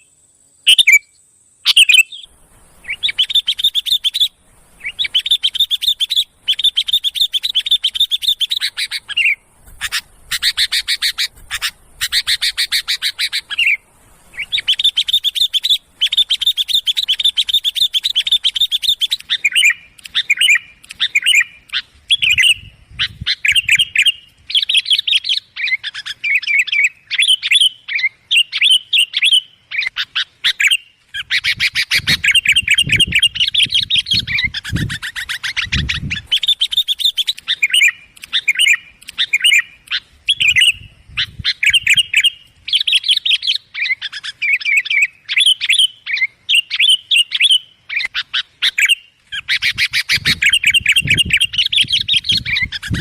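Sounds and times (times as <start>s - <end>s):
bulbul chattering calls: 0.7s - 53.0s.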